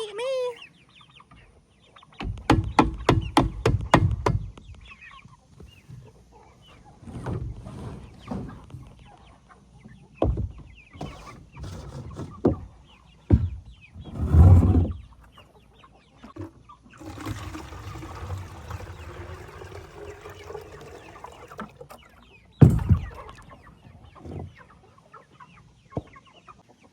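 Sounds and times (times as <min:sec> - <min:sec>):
chickens clucking: 0:00.0 - 0:02.4, 0:04.7 - 0:14.0, 0:14.8 - 0:26.9
dull thumps: 0:22.6 - 0:23.6.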